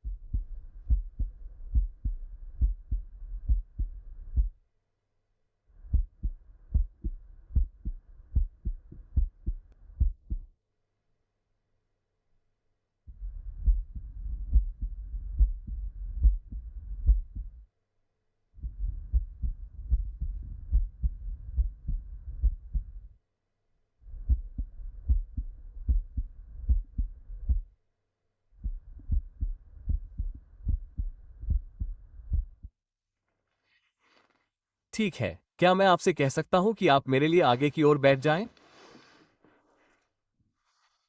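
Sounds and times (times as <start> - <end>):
heartbeat through stethoscope: 0.0 - 4.6, 5.8 - 10.5, 13.1 - 17.7, 18.6 - 23.2, 24.0 - 27.8, 28.6 - 32.7.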